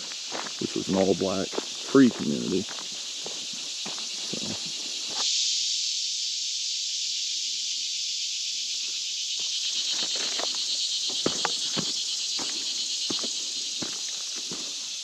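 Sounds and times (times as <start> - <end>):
footsteps on dry leaves: 0.0 - 5.2, 9.7 - 15.0
insects droning: 0.0 - 15.0.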